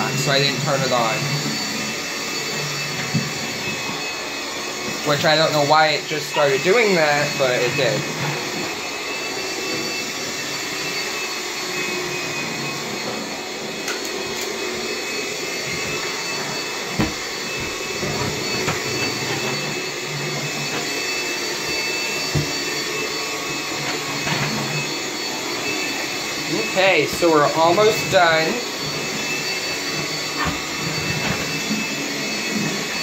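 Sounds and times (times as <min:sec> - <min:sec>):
man talking: 0:00.0 - 0:01.3, 0:05.0 - 0:08.1, 0:26.5 - 0:28.7
stick vacuum whining: 0:00.0 - 0:33.0.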